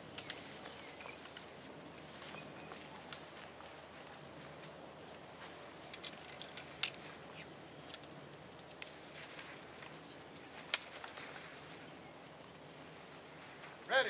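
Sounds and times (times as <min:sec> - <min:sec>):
faint outdoor background: 0:00.0 - 0:14.0
small clicks and clinks: 0:00.2 - 0:01.5, 0:02.2 - 0:03.3, 0:05.8 - 0:07.1.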